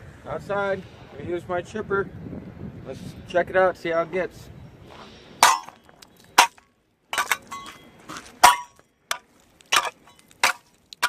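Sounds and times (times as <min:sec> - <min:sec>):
metal blade striking ice: 0:05.4 - 0:05.8, 0:06.4 - 0:06.6, 0:07.2 - 0:11.0.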